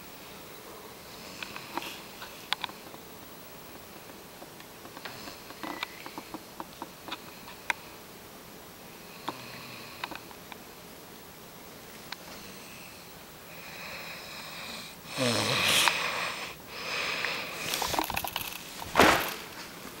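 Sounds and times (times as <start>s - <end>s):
wheezy breaths: 12.3s - 18.0s
loud snoring: 13.6s - 17.7s.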